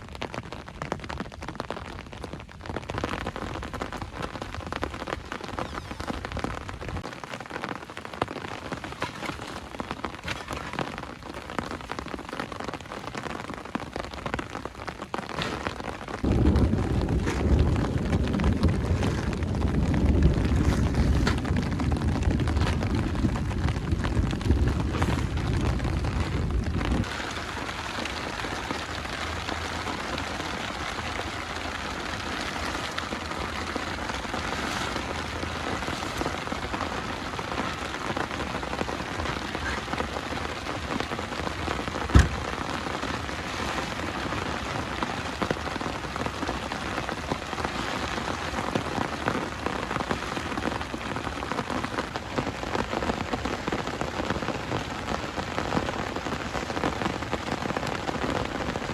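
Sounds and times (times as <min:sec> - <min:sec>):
steady rain falling: 0:00.0 - 0:58.9
low rumble: 0:16.2 - 0:37.8.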